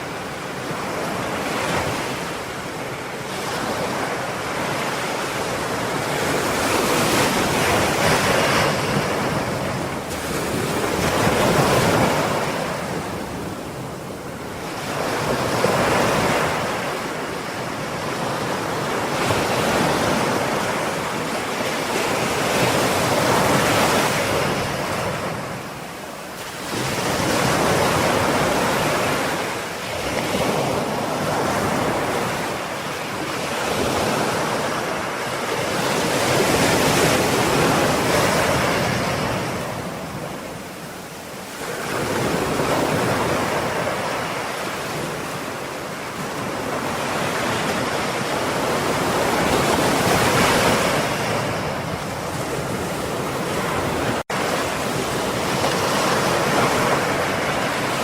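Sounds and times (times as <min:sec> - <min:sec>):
waves breaking on shore: 0:00.0 - 0:58.0.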